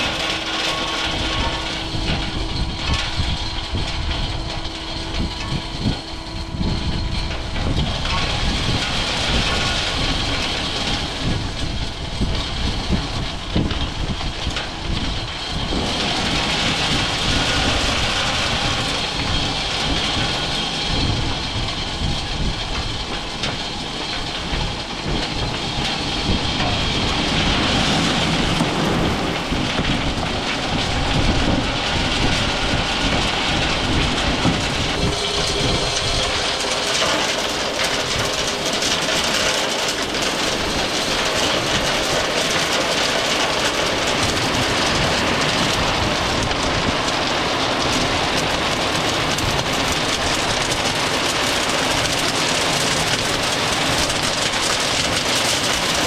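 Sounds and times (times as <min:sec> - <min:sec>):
truck road rumble: 0:00.0 - 0:56.0
trailer rattling: 0:14.0 - 0:56.0.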